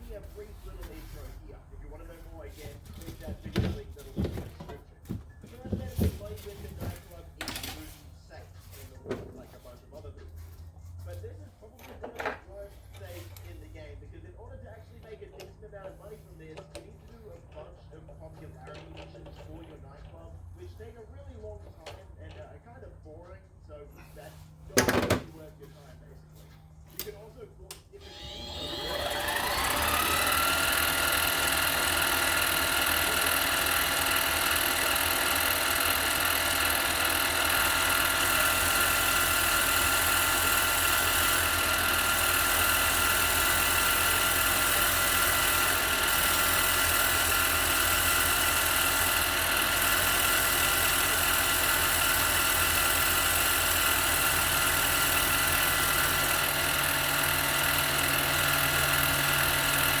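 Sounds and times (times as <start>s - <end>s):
lathe motor whine: 28.0s - 60.0s.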